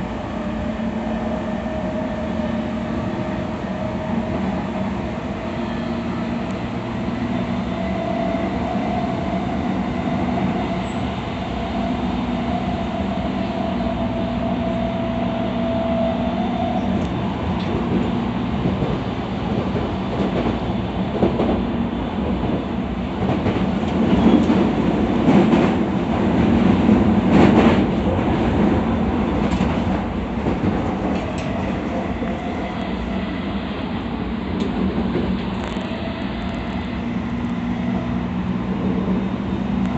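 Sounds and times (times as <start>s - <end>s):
wheel and rail rumble: 0.0s - 39.9s
train motor hum: 24.7s - 39.9s.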